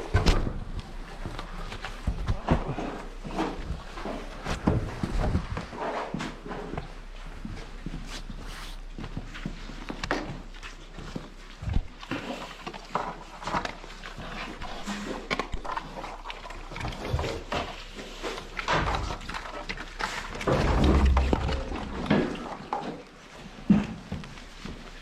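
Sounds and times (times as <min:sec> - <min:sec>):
knocks and scuffs: 0:00.0 - 0:12.0.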